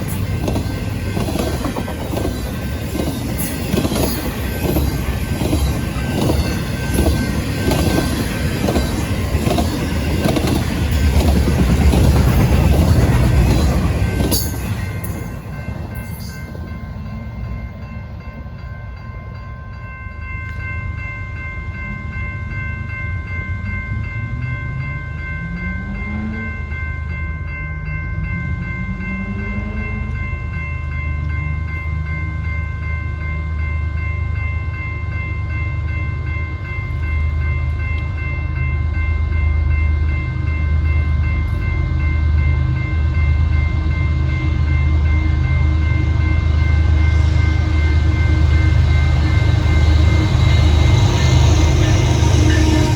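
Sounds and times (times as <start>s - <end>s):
train wheels clattering: 0.0s - 16.8s
steady high whine: 38.1s - 52.9s.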